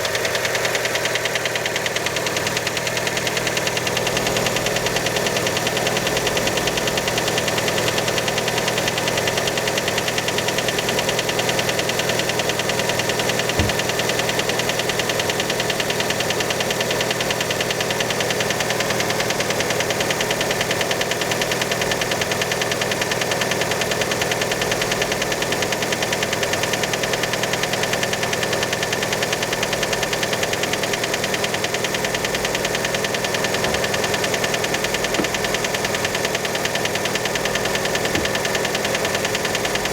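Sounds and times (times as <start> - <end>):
car engine running: 0.0 - 39.9
fast even engine knocking: 0.0 - 39.9.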